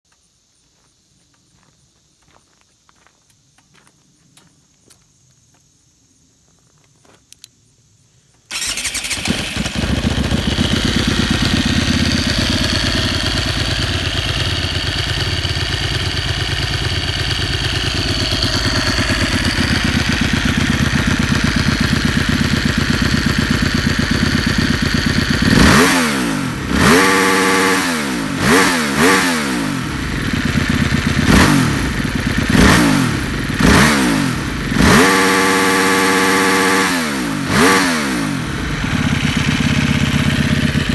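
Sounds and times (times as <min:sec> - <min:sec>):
dirt bike engine idling and revving: 0:08.5 - 0:40.9.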